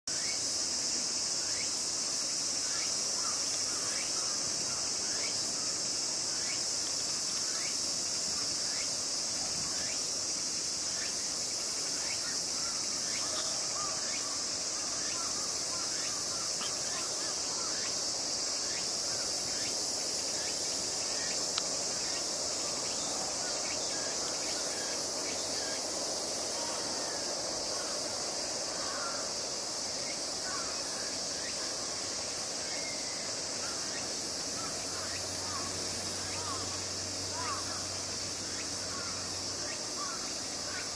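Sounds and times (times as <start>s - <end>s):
high-pitched insect chorus: 0.0s - 40.9s.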